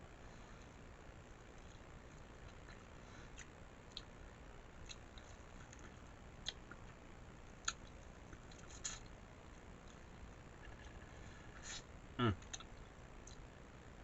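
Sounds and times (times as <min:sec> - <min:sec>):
chewing: 0:01.6 - 0:04.1, 0:04.8 - 0:07.0.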